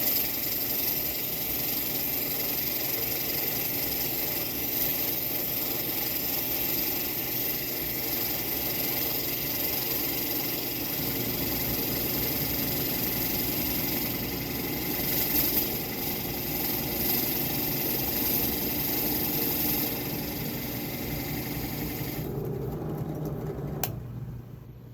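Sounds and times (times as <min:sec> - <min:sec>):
machine hiss: 0:00.0 - 0:22.3
machine low hum: 0:10.8 - 0:24.9.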